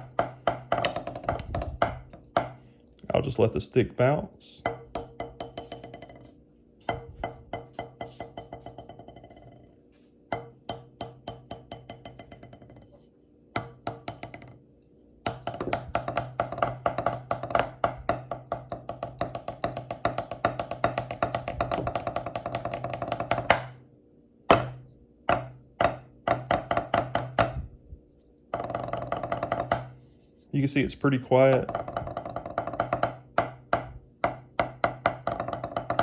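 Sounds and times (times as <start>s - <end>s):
drumstick bouncing on practice pad: 0.0s - 2.6s, 4.6s - 9.7s, 10.3s - 13.0s, 13.6s - 14.6s, 15.2s - 23.9s, 24.5s - 27.7s, 28.5s - 36.0s
drum roll on practice pad: 31.5s - 36.0s.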